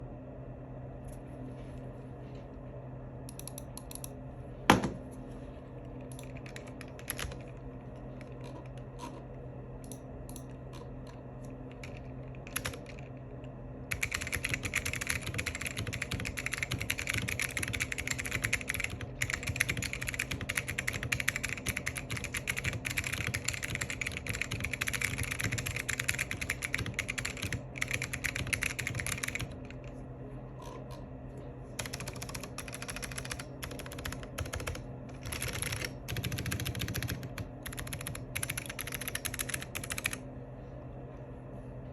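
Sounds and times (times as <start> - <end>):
mechanical keyboard typing: 6.1 - 7.6, 11.7 - 13.1, 13.9 - 29.9, 31.8 - 40.2.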